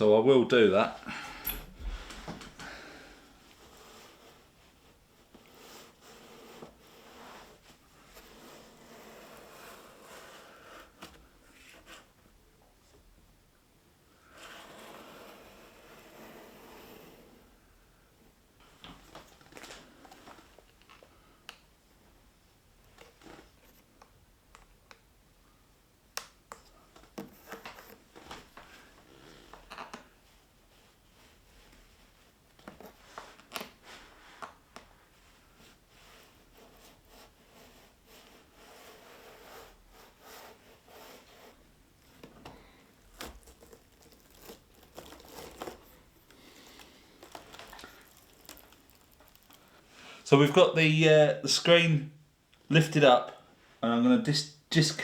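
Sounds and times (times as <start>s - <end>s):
adhesive strip crackling and tearing: 43.0s - 49.8s.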